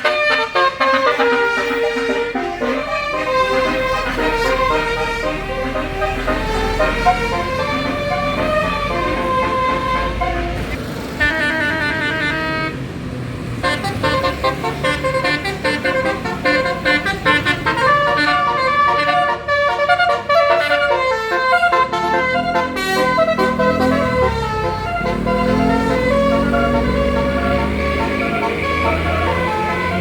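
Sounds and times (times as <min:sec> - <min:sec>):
bus engine running: 0:00.0 - 0:30.0
multi-tone bus horn melodies: 0:00.0 - 0:30.0.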